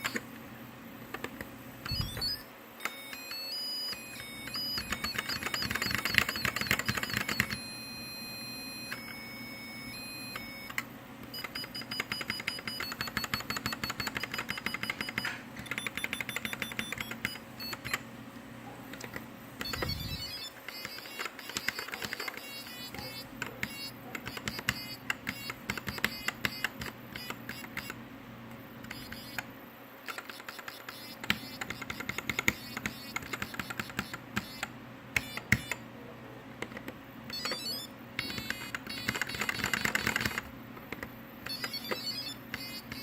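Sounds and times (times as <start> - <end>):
mechanical keyboard clicking: 3.9 - 7.6, 10.4 - 18.0, 18.9 - 28.0, 30.0 - 35.8, 36.6 - 43.0.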